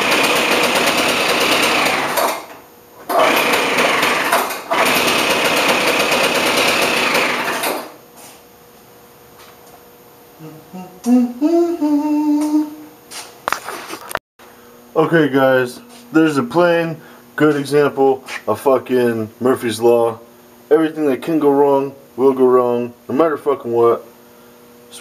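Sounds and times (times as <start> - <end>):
leaf blower two-stroke engine: 0.0 - 8.0
man humming: 10.3 - 13.0.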